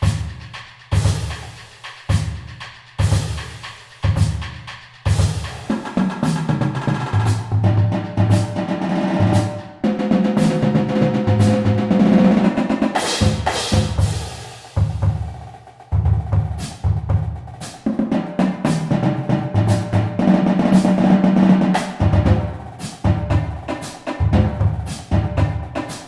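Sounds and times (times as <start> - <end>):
drum-driven music with bass: 0.0 - 26.0.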